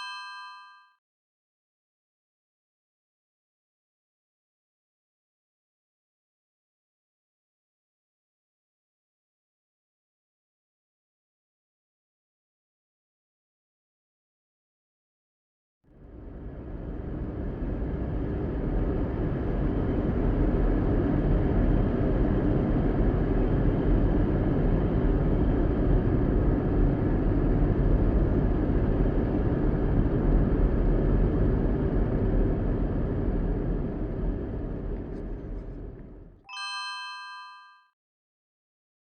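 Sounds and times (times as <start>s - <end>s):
car engine and road rumble: 16.0s - 36.4s.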